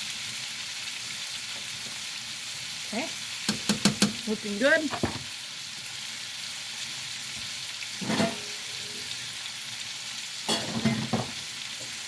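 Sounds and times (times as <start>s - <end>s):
food sizzling in a pan: 0.0s - 12.0s
utensil scraping a pan: 8.0s - 9.2s.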